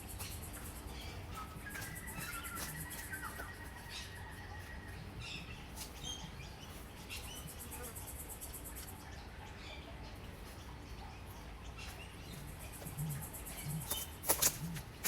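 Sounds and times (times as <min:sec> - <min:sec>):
birds chirping and whistling: 0:00.0 - 0:07.6.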